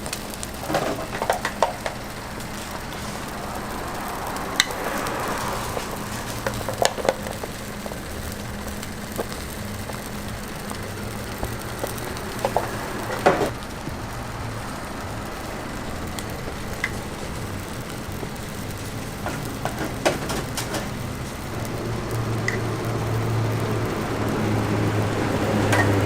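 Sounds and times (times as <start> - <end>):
food sizzling on a griddle: 0.0 - 26.0
utensils knocking and clattering: 0.6 - 3.2, 10.8 - 13.5, 18.9 - 21.2, 25.5 - 26.0.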